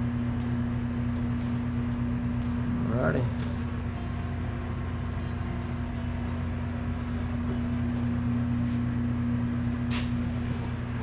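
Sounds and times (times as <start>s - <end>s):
steady mechanical hum: 0.0s - 11.0s.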